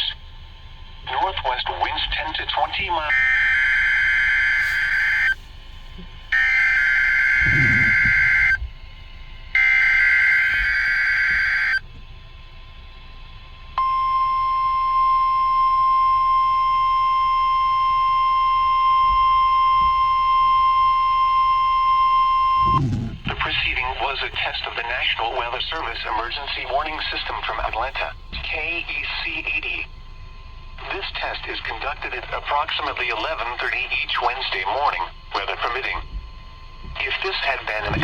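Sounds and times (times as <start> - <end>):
steady warning alarm tone: 0.0 - 38.0
screeching digital header tones: 1.7 - 5.4, 6.3 - 8.6, 9.6 - 11.8.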